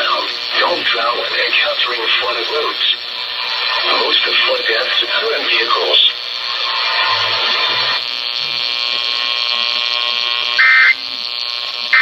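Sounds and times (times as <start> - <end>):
electric buzz: 0.0 - 12.0
static hiss: 0.0 - 12.0
two-tone data screech: 10.4 - 11.0.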